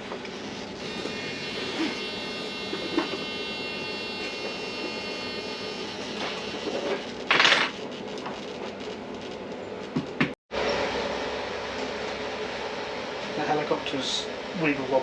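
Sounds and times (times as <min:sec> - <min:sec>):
helicopter motor whine: 0:00.0 - 0:07.3.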